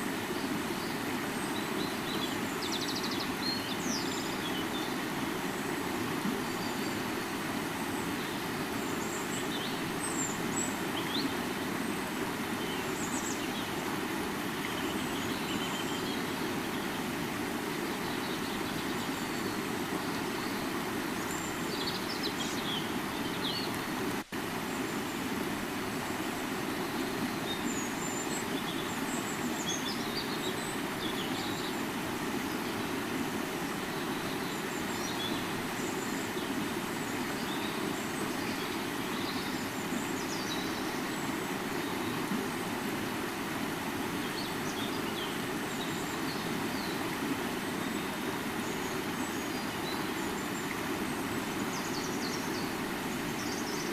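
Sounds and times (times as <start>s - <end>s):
river water rushing: 0.0s - 53.9s.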